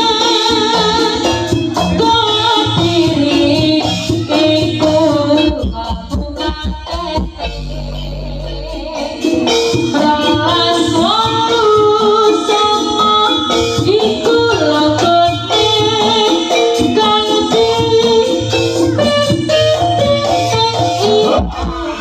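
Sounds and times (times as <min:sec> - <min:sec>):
percussion: 0:00.0 - 0:22.0
low held tone: 0:04.4 - 0:14.7
melody line: 0:04.4 - 0:21.0.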